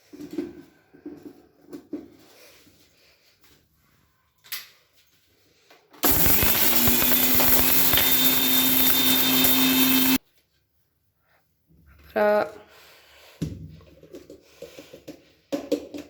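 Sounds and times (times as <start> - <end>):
mixer grinder motor whine: 6.0 - 10.2.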